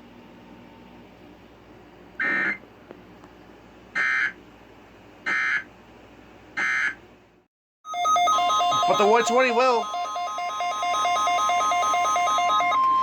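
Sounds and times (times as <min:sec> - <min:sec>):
harsh buzzy data tone bursts: 0:07.9 - 0:12.8.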